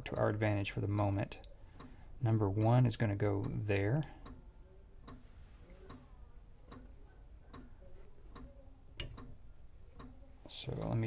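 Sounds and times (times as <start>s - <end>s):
regular ticking: 6.6s - 11.0s
sharp click: 9.0s - 9.3s.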